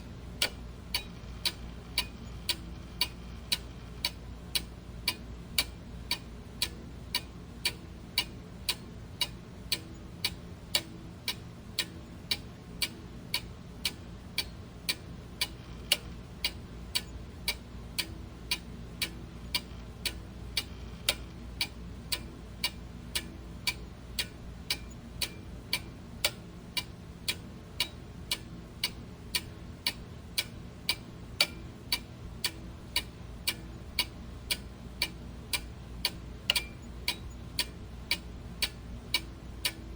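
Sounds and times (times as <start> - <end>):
clock ticking: 0.4 - 39.8.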